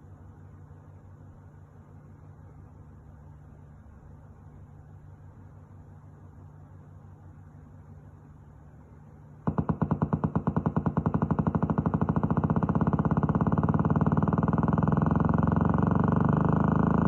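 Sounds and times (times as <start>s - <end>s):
loudspeaker popping and buzzing: 9.5s - 17.0s.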